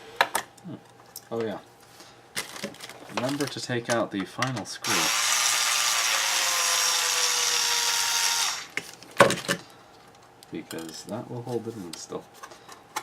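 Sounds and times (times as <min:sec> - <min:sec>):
electric screwdriver running: 0:04.8 - 0:08.8.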